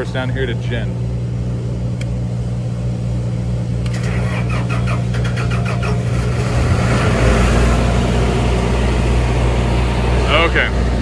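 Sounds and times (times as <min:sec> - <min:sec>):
engine running: 0:00.0 - 0:11.0
engine starter cranking: 0:03.8 - 0:07.4.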